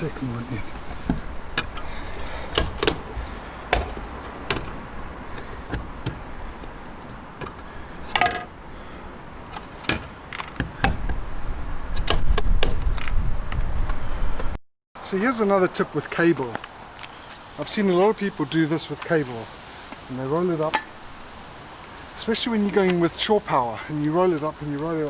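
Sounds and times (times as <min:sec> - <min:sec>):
light clicks and knocks: 0:00.7 - 0:08.5.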